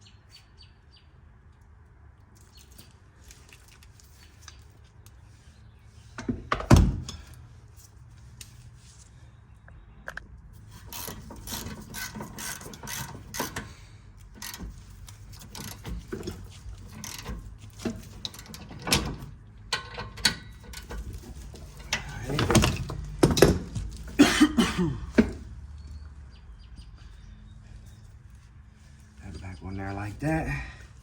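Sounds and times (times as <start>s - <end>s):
tools and parts clanking: 6.1s - 7.5s, 10.1s - 25.6s
hand ratchet clicking: 10.8s - 17.4s.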